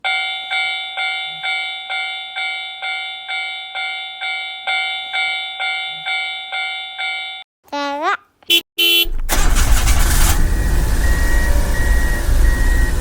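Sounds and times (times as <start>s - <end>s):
level crossing warning bell: 0.0s - 7.5s.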